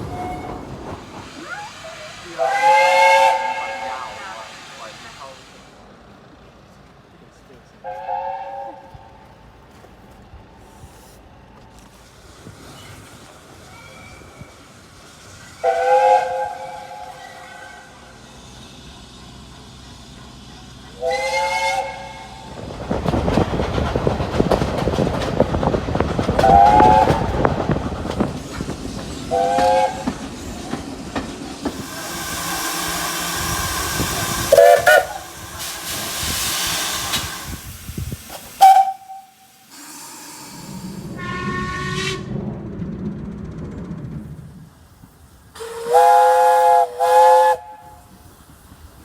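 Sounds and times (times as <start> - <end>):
steam locomotive whistle blasts: 0.0 - 0.6, 1.5 - 4.9, 7.8 - 9.0, 15.6 - 18.1, 21.0 - 22.6, 26.4 - 27.4, 29.3 - 30.1, 31.8 - 37.6, 38.6 - 42.4, 45.6 - 48.2
steam hissing: 0.0 - 6.1, 10.6 - 42.7, 43.8 - 49.0
train rumble: 0.0 - 49.0.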